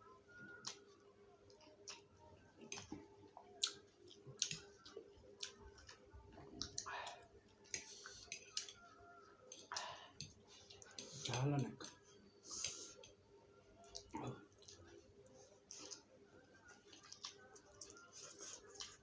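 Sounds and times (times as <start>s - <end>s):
chewing mouth clicks and smacks: 1.5s - 6.9s, 13.9s - 15.0s, 16.7s - 19.0s.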